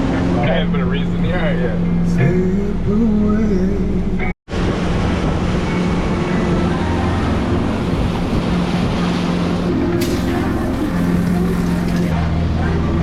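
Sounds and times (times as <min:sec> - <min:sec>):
boat engine running: 0:00.0 - 0:13.0
wind rushing: 0:04.5 - 0:12.2
water rushing: 0:04.5 - 0:13.0.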